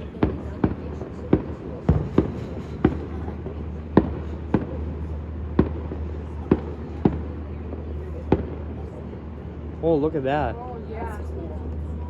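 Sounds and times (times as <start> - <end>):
fireworks bangs: 0.0 - 9.1.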